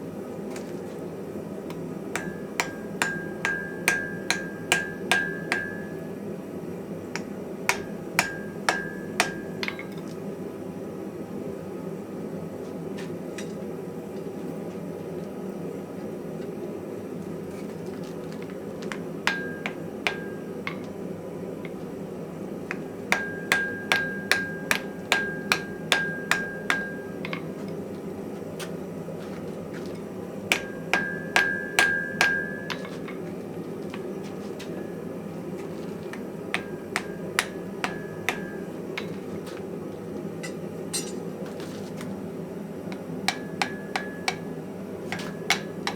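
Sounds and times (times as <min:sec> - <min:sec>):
hammer striking metal on anvil: 0:01.7 - 0:06.2, 0:07.2 - 0:10.0, 0:18.9 - 0:21.0, 0:22.7 - 0:27.5, 0:30.5 - 0:33.2, 0:36.2 - 0:39.2, 0:40.4 - 0:41.3, 0:42.9 - 0:45.9.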